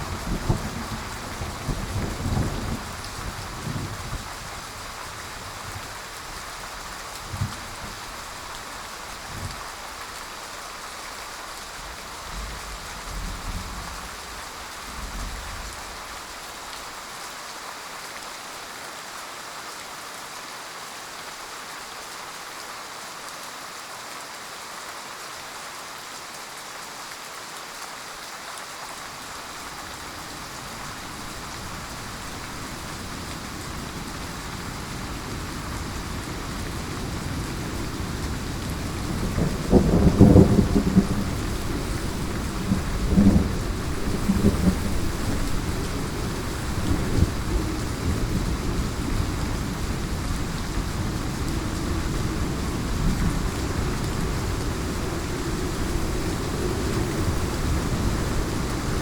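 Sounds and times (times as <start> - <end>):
distant thunder rumbles: 0.0 - 4.2, 29.4 - 59.0
heavy rain falling: 0.0 - 59.0.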